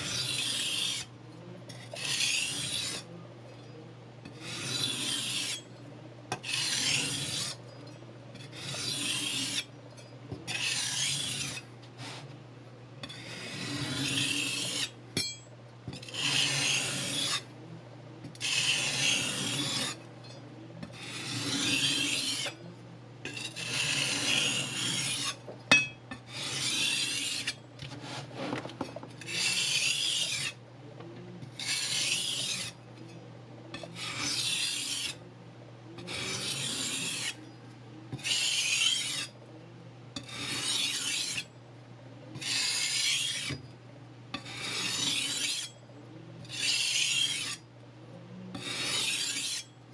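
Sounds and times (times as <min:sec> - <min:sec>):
knife scraping on sandpaper: 0:00.0 - 0:01.1, 0:01.7 - 0:03.1, 0:04.2 - 0:05.7, 0:06.4 - 0:07.7, 0:08.4 - 0:09.7, 0:10.5 - 0:12.3, 0:13.0 - 0:15.0, 0:16.0 - 0:17.5, 0:18.4 - 0:20.0, 0:20.9 - 0:22.6, 0:23.3 - 0:25.4, 0:26.3 - 0:28.6, 0:29.2 - 0:30.6, 0:31.5 - 0:32.8, 0:33.7 - 0:35.2, 0:36.0 - 0:37.4, 0:38.1 - 0:39.4, 0:40.2 - 0:41.5, 0:42.3 - 0:43.6, 0:44.4 - 0:45.8, 0:46.4 - 0:47.6, 0:48.5 - 0:49.7.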